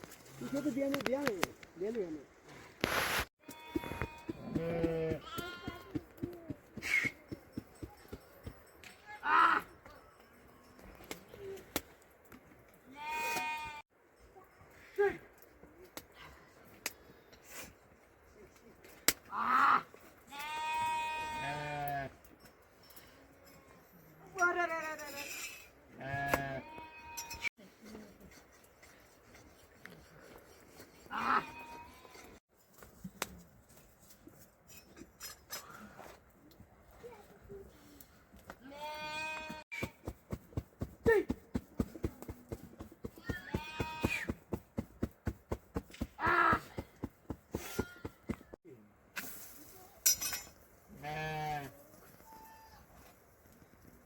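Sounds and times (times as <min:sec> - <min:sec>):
sheep bleating: 0:38.6 - 0:39.6, 0:43.2 - 0:44.3.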